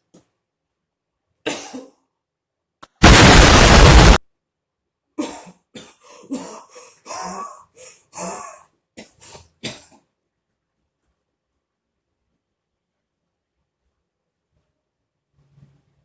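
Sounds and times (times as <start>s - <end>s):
person coughing: 1.5s - 2.0s, 5.2s - 10.1s.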